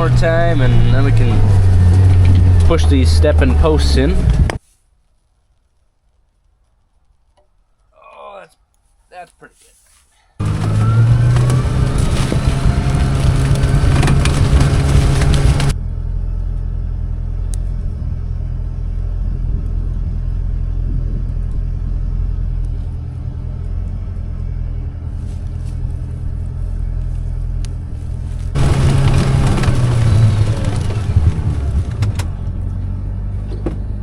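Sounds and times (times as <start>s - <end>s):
vehicle engine droning: 0.0s - 4.6s, 10.4s - 34.0s.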